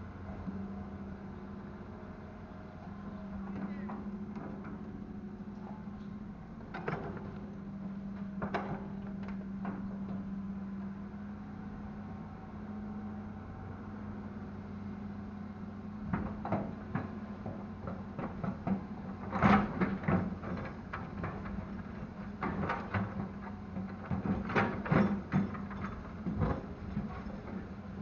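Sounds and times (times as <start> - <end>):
excavator diesel engine running: 0.0 - 28.0
knocks and clunks of soil loading: 2.8 - 10.3, 16.0 - 28.0.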